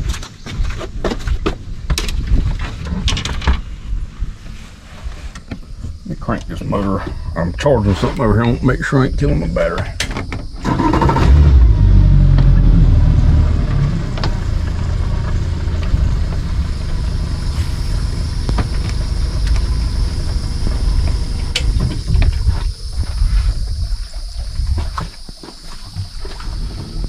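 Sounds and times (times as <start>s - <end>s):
outboard motor starting and idling: 9.6s - 27.0s.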